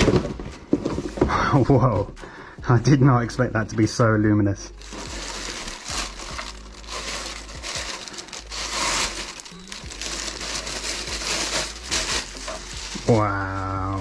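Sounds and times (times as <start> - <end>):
packaging crinkling and rustling: 4.8 - 14.0.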